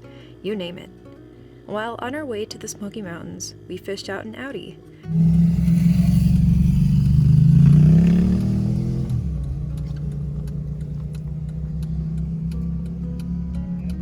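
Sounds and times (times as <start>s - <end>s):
car engine accelerating: 5.1s - 14.0s
faint clicks: 9.1s - 14.0s.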